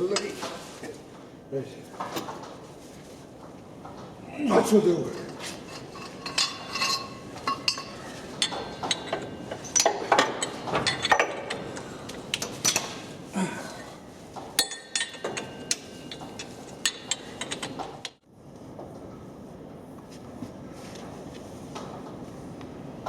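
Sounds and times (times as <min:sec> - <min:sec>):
metal tools clinking: 0:05.1 - 0:13.0, 0:14.6 - 0:17.8.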